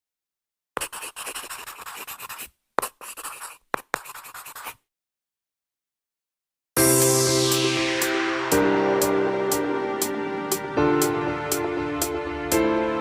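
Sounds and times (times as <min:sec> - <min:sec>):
pen scratching on a surface: 0:00.8 - 0:04.8
pen tap: 0:00.8 - 0:04.8.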